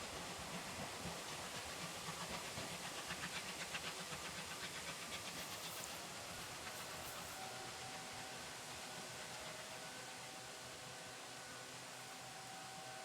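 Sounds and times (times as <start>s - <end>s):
steam hissing: 0.0s - 8.3s
steam locomotive chuffing: 0.0s - 9.3s
train wheel noise: 0.0s - 9.4s.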